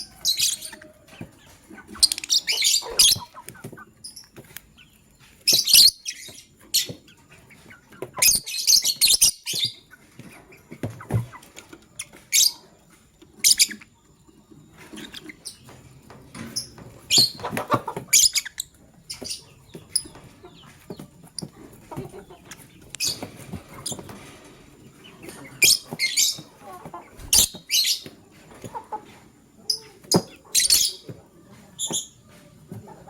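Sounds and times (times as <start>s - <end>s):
lovebirds chirping: 0.0s - 33.0s.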